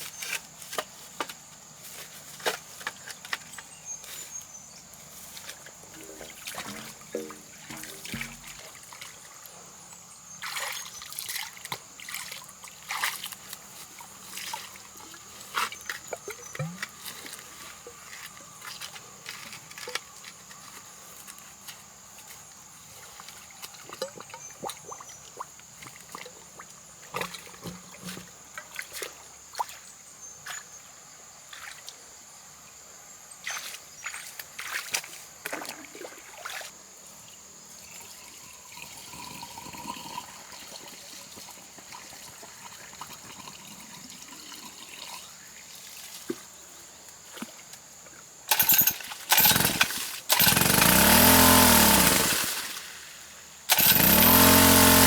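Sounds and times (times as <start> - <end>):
muddy water sloshing and splashing: 2.0 - 9.7, 10.3 - 20.4, 23.0 - 29.9, 33.4 - 36.8
water trickling: 5.3 - 9.3.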